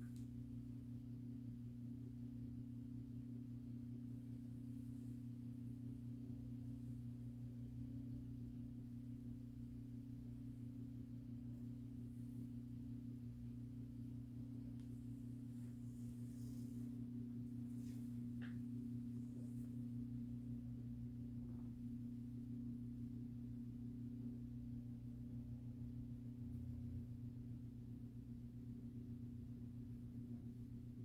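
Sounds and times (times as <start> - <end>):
faint rustling: 14.8 - 19.8.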